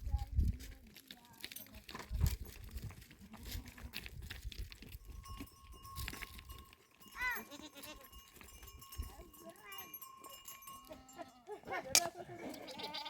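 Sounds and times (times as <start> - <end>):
goat bleating: 7.1 - 8.2, 10.8 - 13.0.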